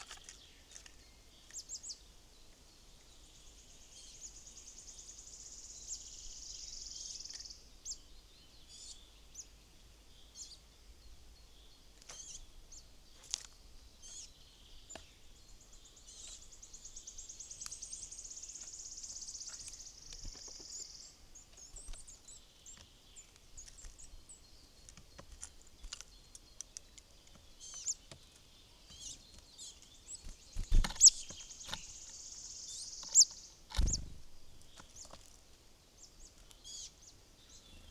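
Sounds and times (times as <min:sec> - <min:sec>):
bird chirps and calls: 0:11.6 - 0:12.9, 0:14.0 - 0:35.2, 0:36.0 - 0:37.9
songbird high trill: 0:30.6 - 0:31.3, 0:32.3 - 0:34.7.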